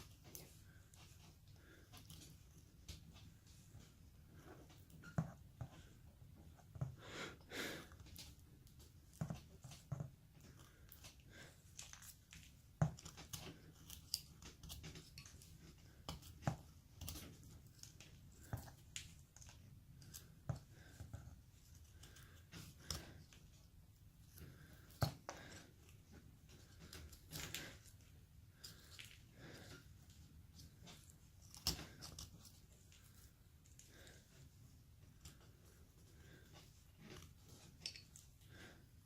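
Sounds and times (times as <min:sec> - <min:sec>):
knife carving wood: 0:07.8 - 0:34.2.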